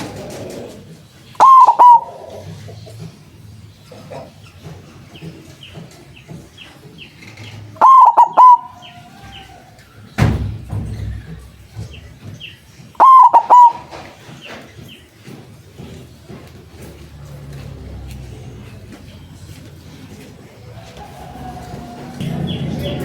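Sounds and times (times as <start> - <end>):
dove cooing: 0.0 - 10.0, 10.9 - 16.1, 16.8 - 23.0
dull thump: 10.2 - 12.1.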